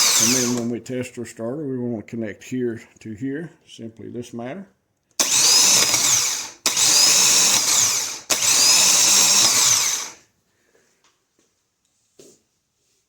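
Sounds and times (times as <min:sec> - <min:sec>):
electric starter motor whining: 0:00.0 - 0:00.7, 0:05.2 - 0:10.2.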